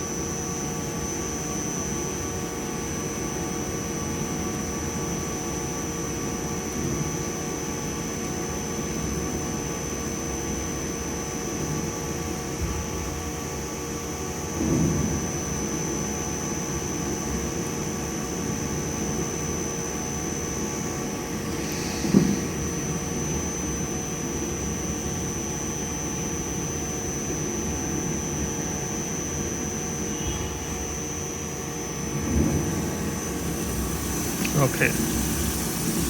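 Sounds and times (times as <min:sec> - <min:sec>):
lathe running with high whine: 0:18.5 - 0:32.2, 0:32.8 - 0:36.0.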